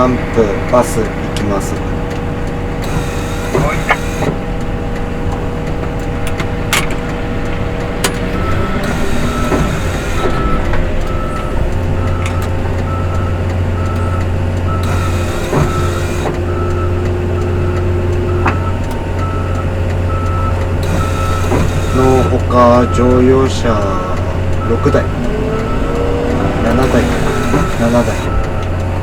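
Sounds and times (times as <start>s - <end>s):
diesel engine running: 0.0s - 29.0s
reversing alarm beeping: 2.8s - 4.4s, 8.2s - 28.8s.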